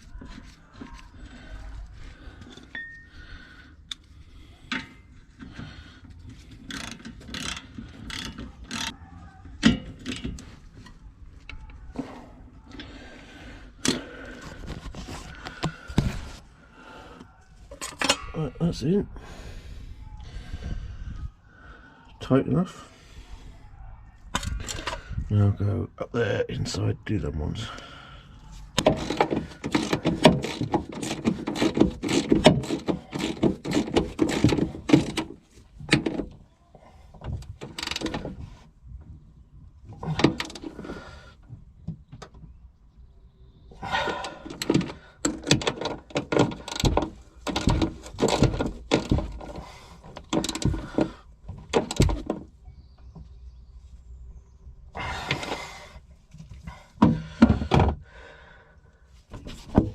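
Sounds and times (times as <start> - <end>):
hand tools clicking and knocking: 3.9 - 12.9, 13.7 - 16.1, 17.7 - 18.3, 28.8 - 36.4, 39.9 - 41.1, 43.9 - 52.5.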